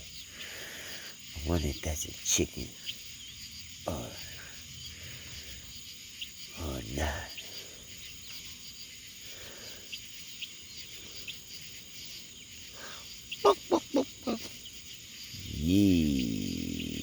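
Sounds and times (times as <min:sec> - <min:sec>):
night insects chorus: 0:00.0 - 0:17.0
poultry calling: 0:07.3 - 0:17.0.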